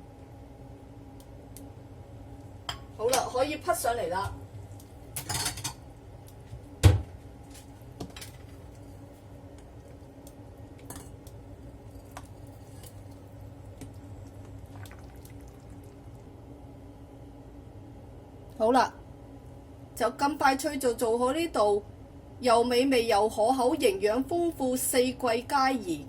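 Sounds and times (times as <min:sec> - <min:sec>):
steady low hum: 0:00.0 - 0:26.0
soup dripping: 0:11.2 - 0:16.3.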